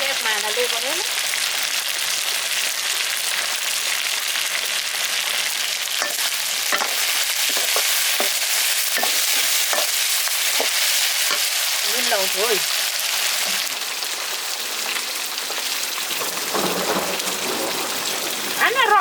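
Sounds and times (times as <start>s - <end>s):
food sizzling in a pan: 0.0s - 19.0s
utensil scraping a pan: 6.0s - 11.6s.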